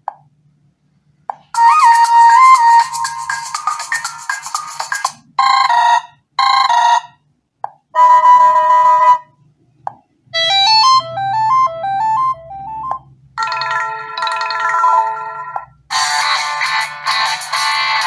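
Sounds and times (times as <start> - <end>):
stepping electronic notes: 1.6 - 5.2, 14.9 - 18.0.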